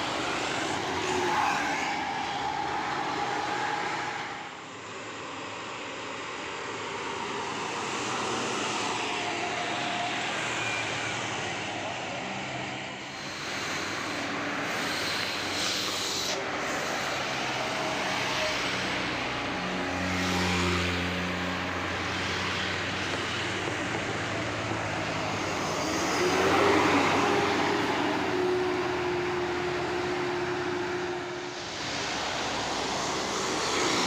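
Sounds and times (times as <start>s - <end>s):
heavy bus engines under load: 0.0s - 34.0s
road noise: 0.0s - 34.0s.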